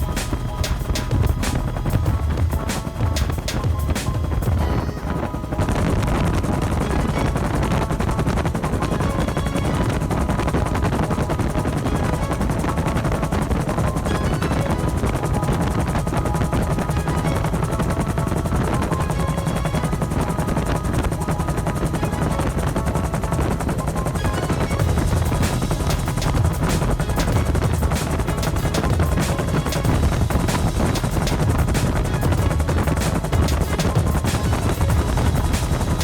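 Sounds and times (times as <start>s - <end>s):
helicopter rotor beating: 0.0s - 36.0s.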